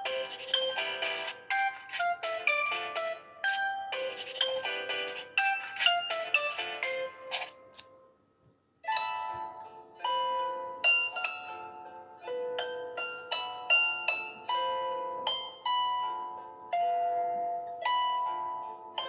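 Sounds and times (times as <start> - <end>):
tablet ringtone melody: 0.0 - 7.8.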